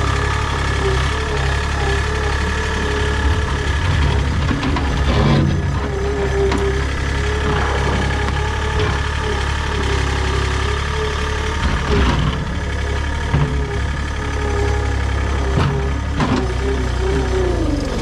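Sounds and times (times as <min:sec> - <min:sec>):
engine idling: 0:00.0 - 0:18.0.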